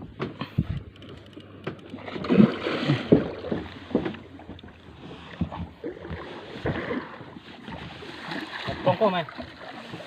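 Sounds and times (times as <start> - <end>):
water slapping against boat hull: 0.0 - 10.0
knocks on boat: 3.1 - 7.4.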